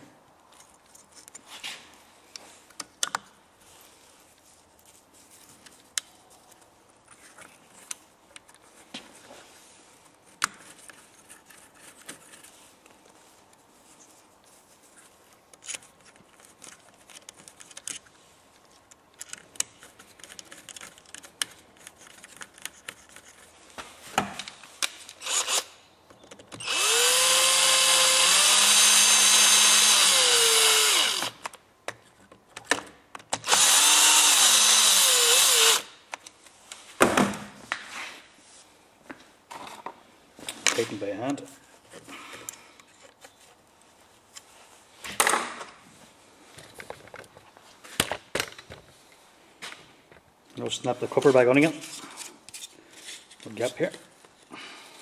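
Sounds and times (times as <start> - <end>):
parts clicking and knocking: 18.7 - 23.5
power drill spinning: 25.2 - 25.8, 26.6 - 31.4, 33.4 - 36.0.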